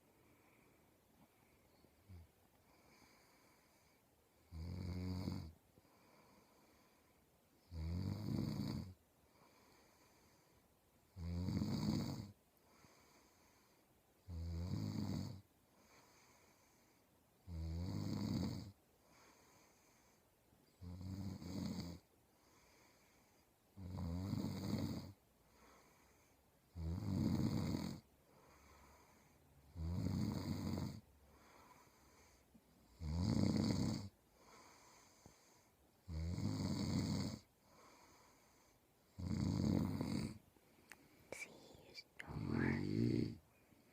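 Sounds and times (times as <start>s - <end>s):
quiet breathing: 0.0s - 11.2s, 12.0s - 43.9s
man snoring: 4.5s - 5.5s, 7.7s - 9.0s, 11.2s - 13.6s, 14.3s - 16.7s, 17.5s - 19.6s, 20.8s - 23.1s, 23.8s - 40.4s, 41.4s - 43.4s.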